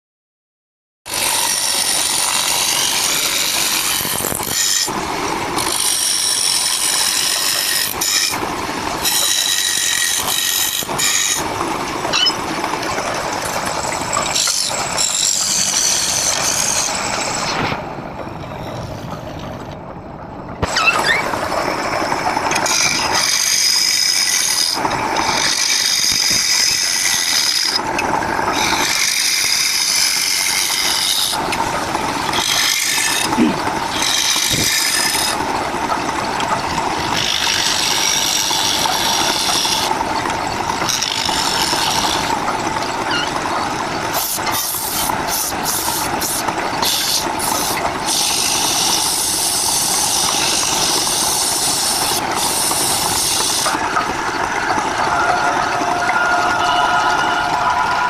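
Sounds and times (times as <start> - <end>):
power tool cutting wood: 1.1 - 8.4, 9.0 - 11.5, 22.5 - 31.4, 32.2 - 35.4, 37.0 - 40.0, 40.8 - 42.3, 44.1 - 55.2.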